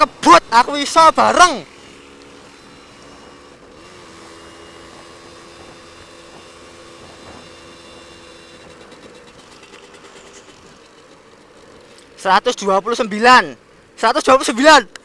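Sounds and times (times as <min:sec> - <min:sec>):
two-stroke motorcycle engine high revs: 0:00.7 - 0:11.9.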